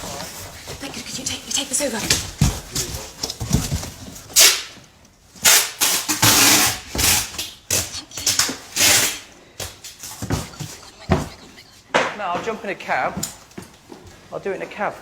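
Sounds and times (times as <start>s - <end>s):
tape ripping off a roll: 4.3s - 4.7s, 5.4s - 10.5s.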